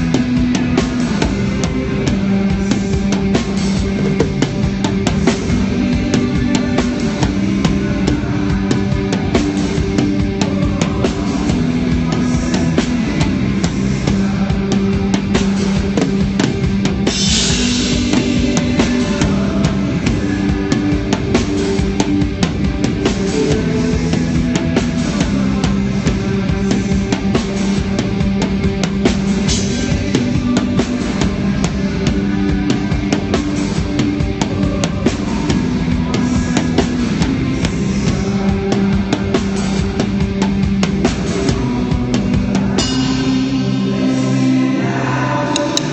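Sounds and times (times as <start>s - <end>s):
live rock band playing: 0.0s - 45.9s
cymbal crashes: 42.8s - 44.6s.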